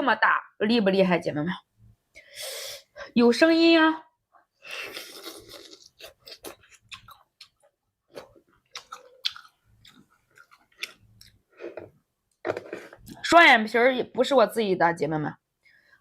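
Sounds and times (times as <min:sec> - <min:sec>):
person chewing food: 0:04.8 - 0:13.2.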